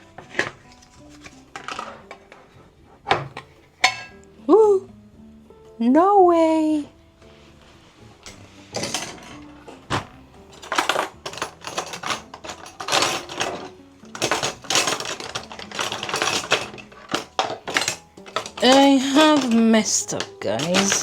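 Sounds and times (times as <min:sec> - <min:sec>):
soft background music: 0:00.0 - 0:21.0
tin can clinking and clattering: 0:00.2 - 0:02.4, 0:03.1 - 0:04.2, 0:08.8 - 0:21.0.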